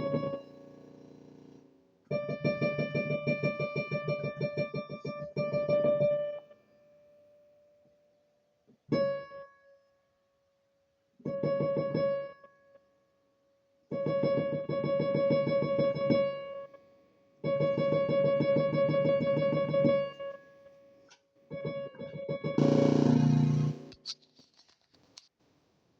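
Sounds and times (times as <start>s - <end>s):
piano note repeated rapidly: 21.5s - 24.0s.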